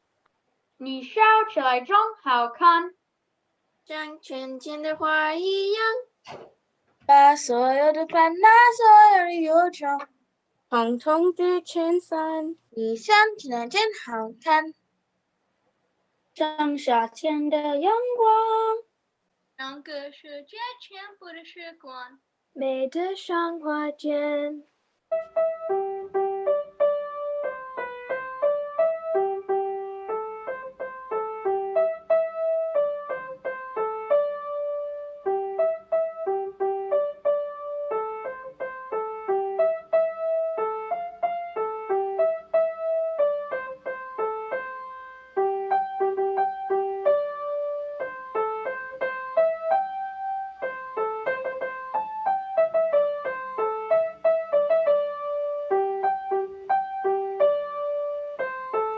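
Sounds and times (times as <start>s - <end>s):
piano music: 25.2s - 58.9s.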